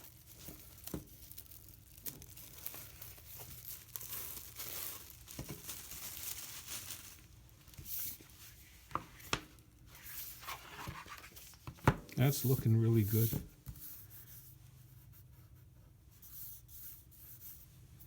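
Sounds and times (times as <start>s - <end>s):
shrink-wrap tearing and crinkling: 0.0s - 7.8s.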